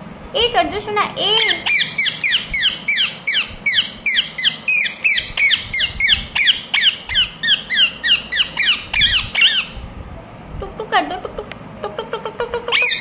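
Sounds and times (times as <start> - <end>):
parakeet squawking: 1.2 - 9.8, 12.2 - 13.0.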